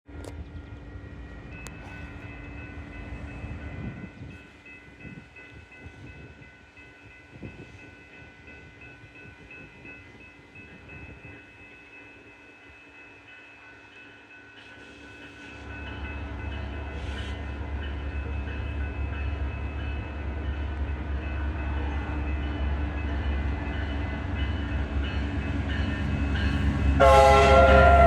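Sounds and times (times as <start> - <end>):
diesel locomotive rumble: 15.6 - 28.0.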